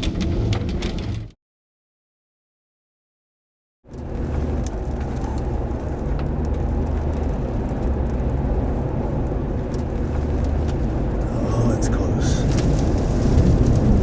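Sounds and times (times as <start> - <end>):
vehicle noise: 3.8 - 14.0
wind rumble: 3.9 - 14.0.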